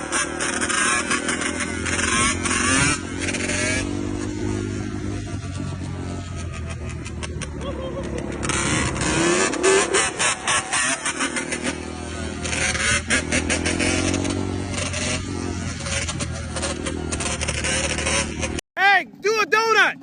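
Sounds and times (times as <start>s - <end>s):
two-stroke engine revving: 0.0s - 18.6s
sharp exhaust cracks: 0.0s - 20.0s.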